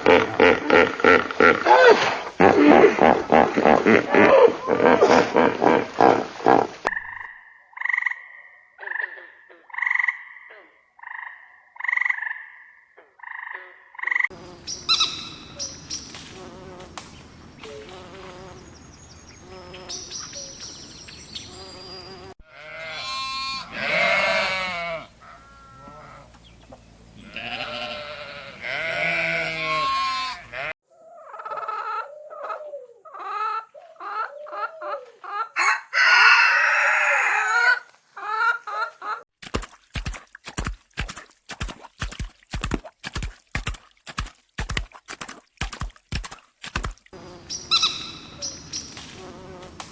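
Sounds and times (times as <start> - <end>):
rooster crowing: 35.6 - 37.9.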